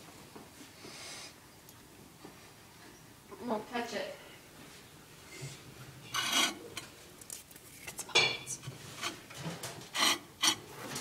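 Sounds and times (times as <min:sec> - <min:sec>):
utensil scraping and clinking plate: 0:06.0 - 0:07.0, 0:07.7 - 0:11.0.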